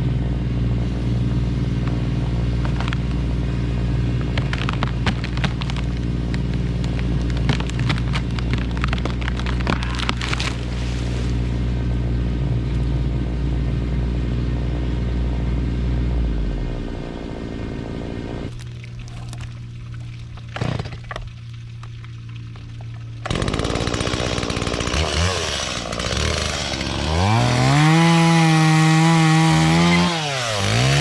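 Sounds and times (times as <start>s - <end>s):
engine running steadily: 0.0s - 24.9s
sharp cracks and snaps: 4.2s - 10.7s.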